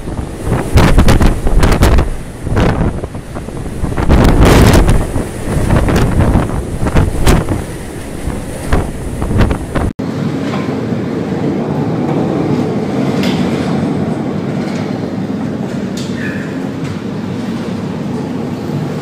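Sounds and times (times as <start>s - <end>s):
waves crashing: 0.0s - 9.9s
wind noise on microphone: 0.0s - 10.0s
steady rumbling noise: 0.0s - 19.0s
storm wind: 0.0s - 19.0s.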